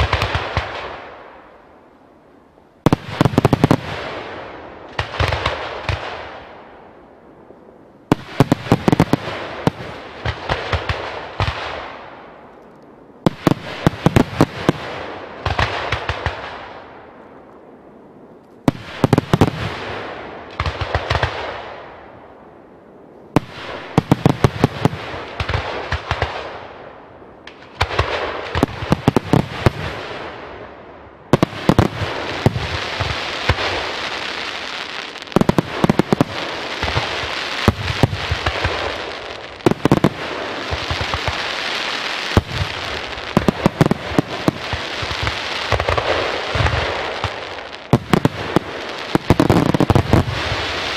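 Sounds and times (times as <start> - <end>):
fireworks bangs: 0.0 - 1.5, 2.8 - 6.8, 8.1 - 12.4, 13.2 - 17.2, 18.6 - 22.1, 23.3 - 26.8, 27.4 - 50.9
fireworks hissing: 31.4 - 50.9.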